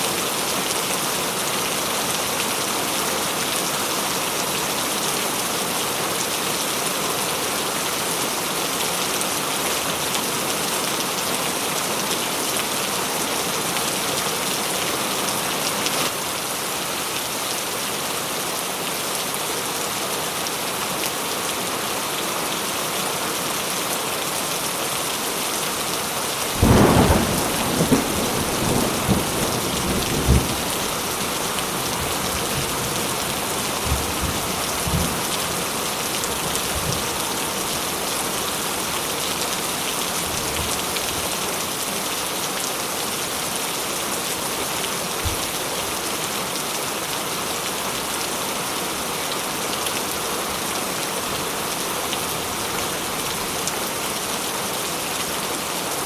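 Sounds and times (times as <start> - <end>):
steady rain falling: 0.0 - 56.0
thunderclap and rumbling: 26.6 - 30.9.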